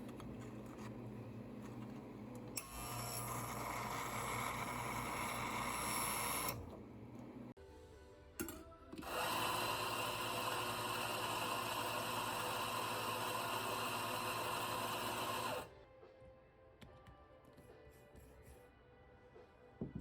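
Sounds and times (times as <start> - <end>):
coffee machine motor running: 0.0 - 7.5, 9.0 - 15.7.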